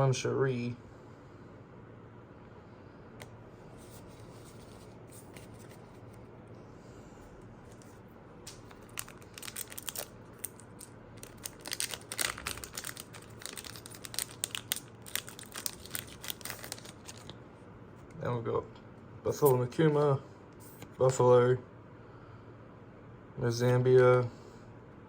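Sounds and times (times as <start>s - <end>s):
foil wrapper crinkling: 8.5s - 17.4s
foil wrapper tearing: 8.5s - 17.4s.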